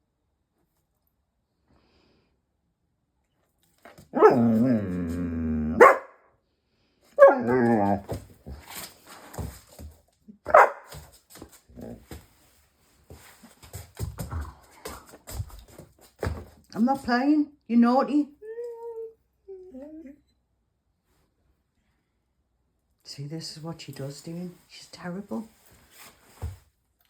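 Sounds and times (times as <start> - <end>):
dog sharp bark: 4.1 - 4.5, 5.8 - 6.2, 7.2 - 7.7, 10.5 - 11.0
dog yowling bark: 4.1 - 4.9, 5.7 - 6.2, 7.2 - 8.0, 10.5 - 10.9.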